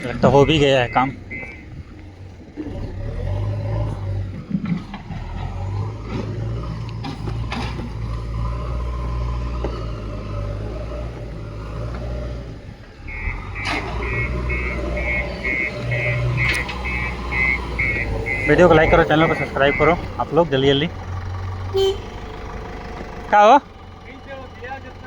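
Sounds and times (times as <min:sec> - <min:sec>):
reversing alarm beeping: 0:00.0 - 0:01.9, 0:13.0 - 0:20.3
diesel engine droning: 0:00.0 - 0:25.0.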